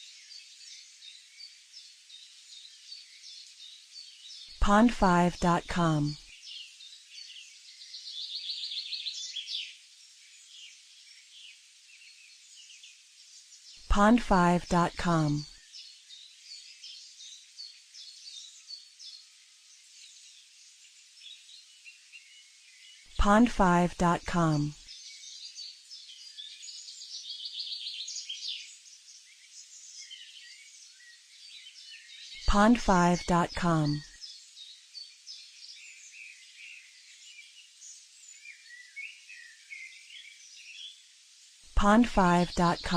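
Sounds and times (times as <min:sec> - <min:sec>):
faint steady hiss: 0:00.0 - 0:23.5, 0:33.5 - 0:42.9
birds singing and chirping: 0:00.0 - 0:42.9.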